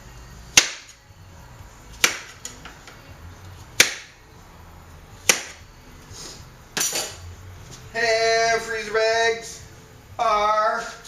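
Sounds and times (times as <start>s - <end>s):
knife chopping fruit on board: 0.6s - 1.0s, 2.0s - 2.4s, 3.8s - 4.1s, 5.2s - 5.6s.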